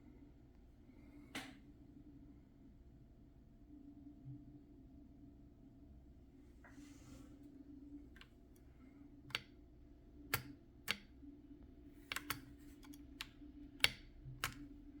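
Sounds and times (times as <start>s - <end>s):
mechanical keyboard key clicks: 10.3s - 11.0s, 12.1s - 14.7s.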